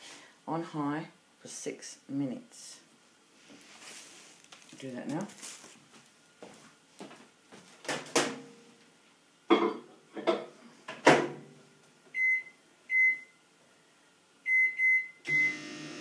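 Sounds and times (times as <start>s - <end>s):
microwave keypad beeps: 12.2s - 13.3s, 14.5s - 15.7s.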